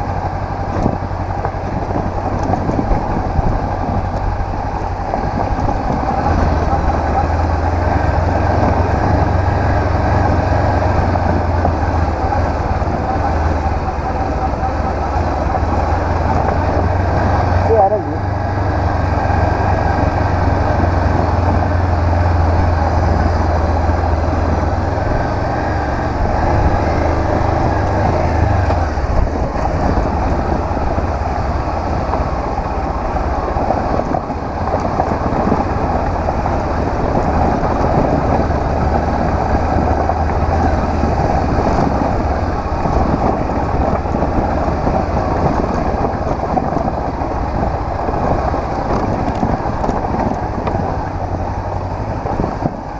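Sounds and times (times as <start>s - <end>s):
motorcycle engine running: 0.0s - 52.9s.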